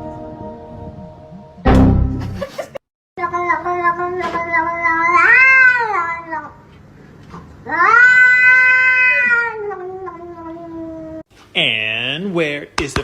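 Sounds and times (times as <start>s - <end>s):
cat yowling: 3.3s - 6.6s, 7.7s - 11.2s.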